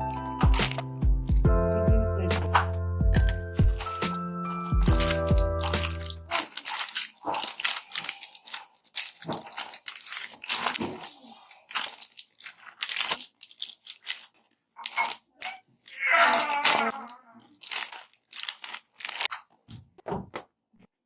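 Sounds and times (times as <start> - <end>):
food packaging crinkling: 0.0 - 1.1, 2.4 - 19.7.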